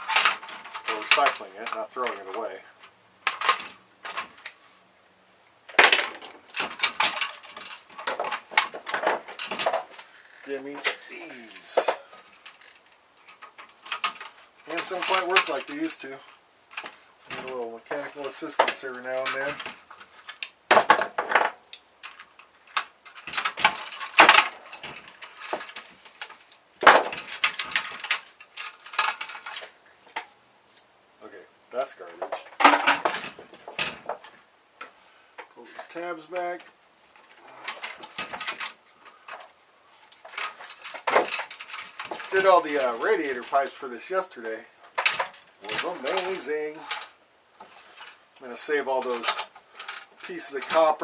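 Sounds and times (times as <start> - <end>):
small parts knocking and clicking: 0.0 - 4.6, 5.7 - 30.4, 32.0 - 43.8, 44.4 - 51.0.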